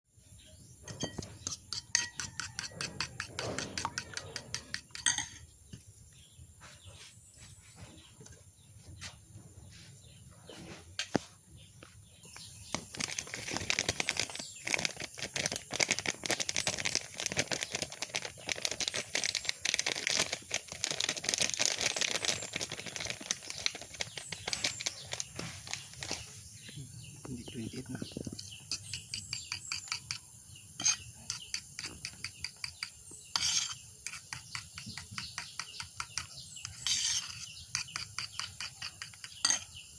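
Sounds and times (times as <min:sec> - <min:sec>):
oil crackling: 0:12.7 - 0:26.2.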